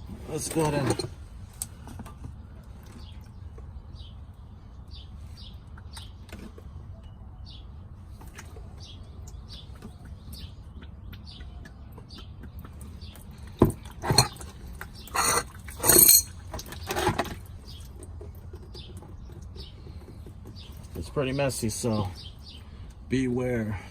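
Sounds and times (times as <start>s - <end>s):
metal clinks and scraping rattles: 0.3s - 1.7s, 14.0s - 17.4s
small birds chirping: 1.7s - 23.9s.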